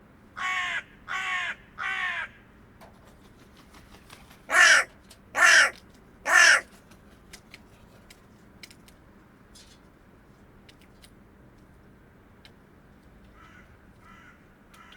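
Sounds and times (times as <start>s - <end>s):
crow cawing: 0.4s - 2.4s, 4.5s - 6.7s, 13.4s - 14.9s.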